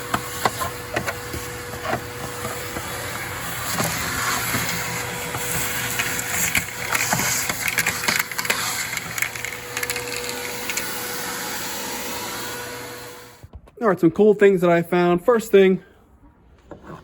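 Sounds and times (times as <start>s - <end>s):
heavy machine engine whining: 1.5s - 13.4s
wood crunching and splintering: 3.3s - 10.8s.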